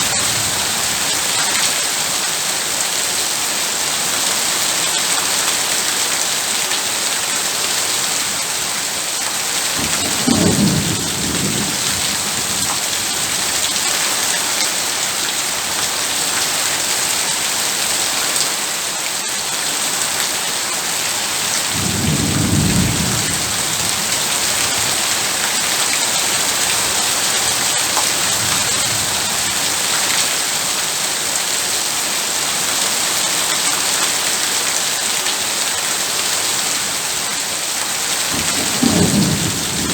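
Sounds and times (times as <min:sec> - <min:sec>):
heavy rain falling: 0:00.0 - 0:39.9
thunder rumbling: 0:09.8 - 0:13.7, 0:21.7 - 0:25.3, 0:38.3 - 0:39.9.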